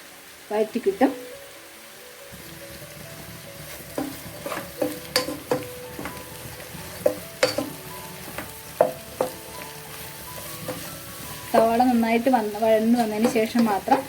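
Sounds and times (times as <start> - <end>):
onions sizzling in oil: 0.0 - 14.0
spatula clinking against pan: 4.0 - 6.2, 7.0 - 9.4.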